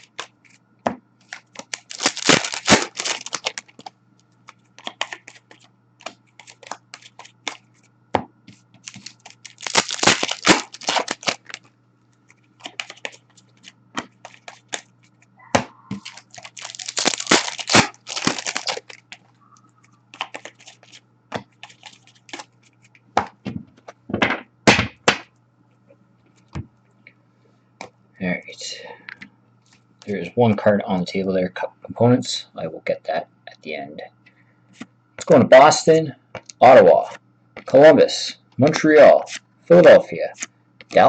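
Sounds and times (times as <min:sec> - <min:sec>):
foil wrappers crinkling and tearing: 0:01.2 - 0:03.9, 0:04.5 - 0:07.6, 0:08.8 - 0:11.7, 0:12.6 - 0:14.9, 0:15.9 - 0:19.3, 0:20.1 - 0:21.0, 0:21.6 - 0:22.8
cards clicking and tapping: 0:04.8 - 0:07.6, 0:20.1 - 0:22.5.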